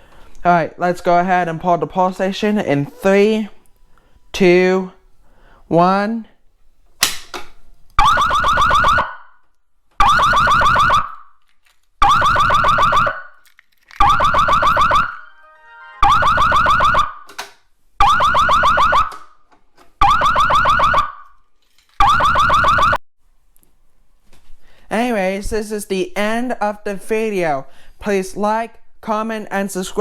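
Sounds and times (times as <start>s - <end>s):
fire alarm pulsing tone: 8.0s - 9.2s, 10.0s - 11.2s, 12.0s - 13.4s, 14.0s - 17.2s, 18.0s - 19.1s, 20.0s - 21.2s, 22.0s - 23.0s.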